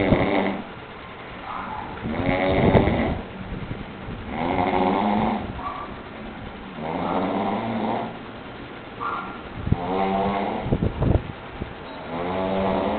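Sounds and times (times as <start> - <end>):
man snoring: 0.0 - 0.7, 2.1 - 3.2, 4.3 - 5.5, 6.8 - 8.2, 9.8 - 10.7, 12.1 - 12.9.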